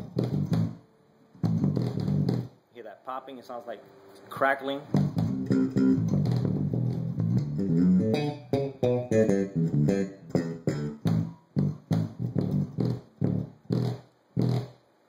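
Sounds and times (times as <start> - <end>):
electric bass notes: 0.0 - 2.6, 4.8 - 14.8
blown speaker popping and crackling: 1.4 - 2.6, 5.0 - 14.8.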